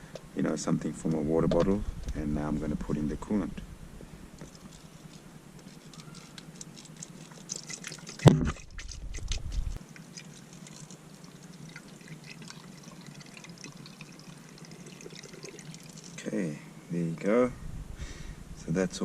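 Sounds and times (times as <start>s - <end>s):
liquid trickling and dripping: 4.4s - 16.3s
low rumble: 8.4s - 9.8s, 17.5s - 18.8s.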